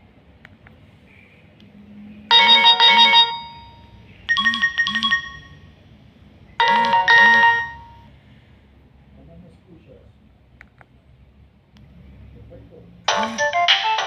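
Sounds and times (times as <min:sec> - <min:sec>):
phone ringtone chiming: 0:02.3 - 0:05.8, 0:06.6 - 0:08.1, 0:13.1 - 0:14.0.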